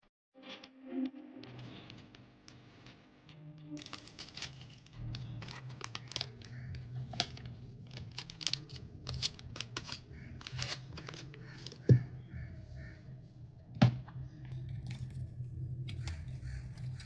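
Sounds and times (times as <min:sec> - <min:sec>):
paper crinkling: 0:03.8 - 0:11.9, 0:14.5 - 0:17.0
low steady hum: 0:14.5 - 0:17.0.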